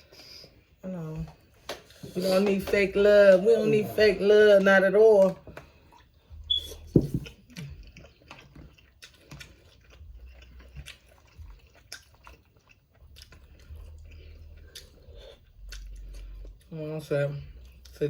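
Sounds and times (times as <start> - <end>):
close-up chewing and mouth smacks: 5.1 - 16.8, 17.4 - 18.0.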